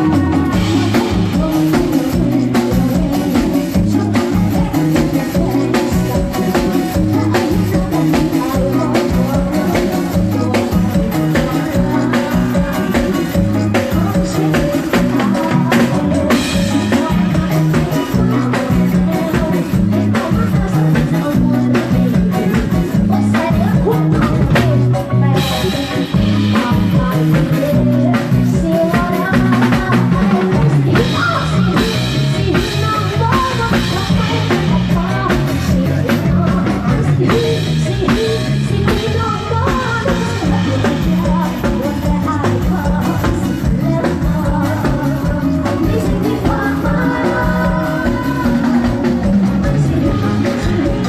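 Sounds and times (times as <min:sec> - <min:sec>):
drum kit beat: 0:00.0 - 0:51.0
live band music: 0:00.0 - 0:51.0
repeating bass line: 0:00.0 - 0:51.0.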